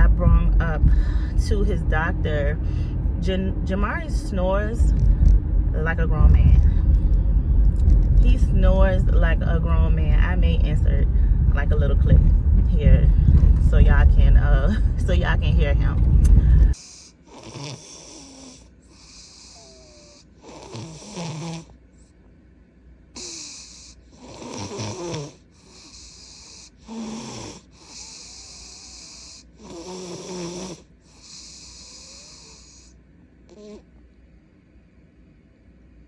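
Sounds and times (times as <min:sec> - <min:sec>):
child snoring: 0:16.7 - 0:21.8, 0:23.2 - 0:33.9
soft hissing breaths: 0:16.7 - 0:22.2, 0:23.2 - 0:33.8.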